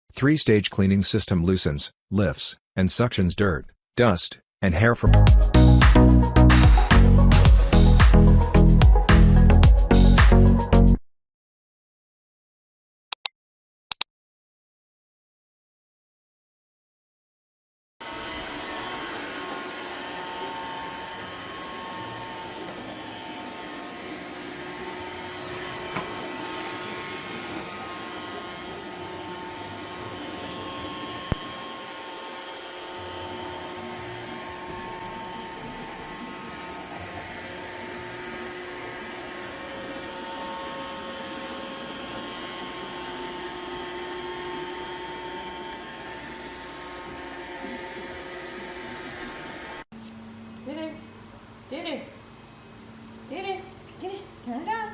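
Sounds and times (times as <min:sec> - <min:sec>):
robot vacuum motor humming: 0:18.0 - 0:49.8.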